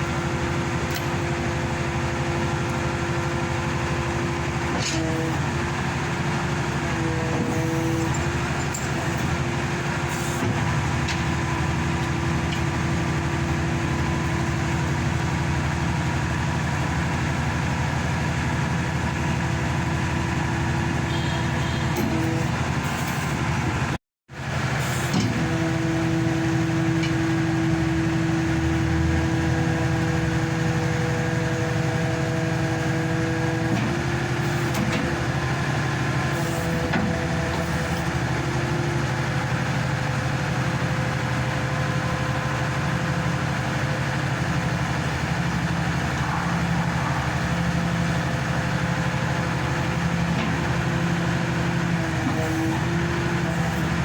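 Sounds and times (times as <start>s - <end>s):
engine and hydraulic pump running: 0.0s - 54.0s
steady whine: 33.2s - 54.0s.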